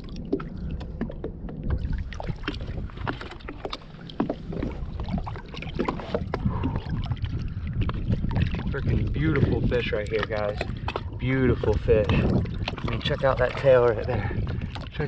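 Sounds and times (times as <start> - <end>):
water splashing: 0.0 - 15.0
wind on microphone: 0.0 - 15.0.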